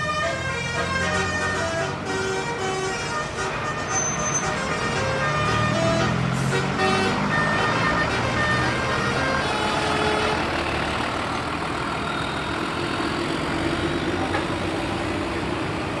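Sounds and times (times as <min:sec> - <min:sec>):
musical horn notes: 0:00.0 - 0:10.4
bus engine running: 0:00.0 - 0:16.0.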